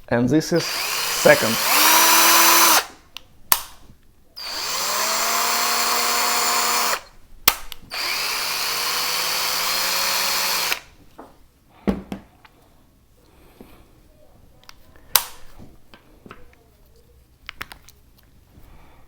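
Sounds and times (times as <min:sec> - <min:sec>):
cordless drill motor whining: 0:00.6 - 0:02.9, 0:04.4 - 0:07.1, 0:07.9 - 0:10.9.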